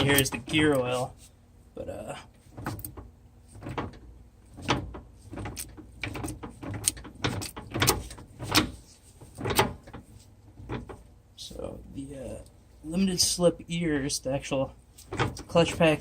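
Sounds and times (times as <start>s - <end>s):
differential gears clunking: 2.4s - 11.1s, 15.0s - 16.0s.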